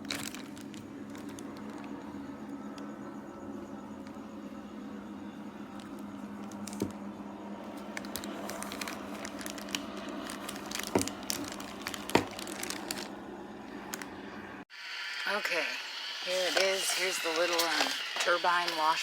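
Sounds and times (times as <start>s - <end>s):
water squishing and crackling: 0.0s - 2.0s, 7.7s - 13.2s
mini washer motor hum: 0.0s - 19.0s.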